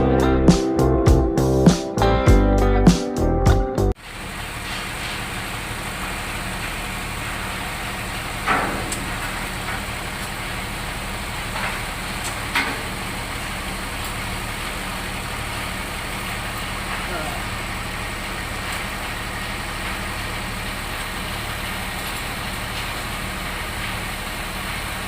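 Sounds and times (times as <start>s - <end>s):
engine humming: 0.0s - 25.0s.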